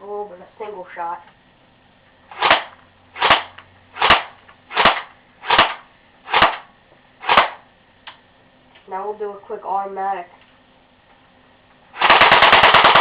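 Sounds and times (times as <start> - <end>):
airsoft rifle shots: 2.3 - 7.7, 12.0 - 13.0.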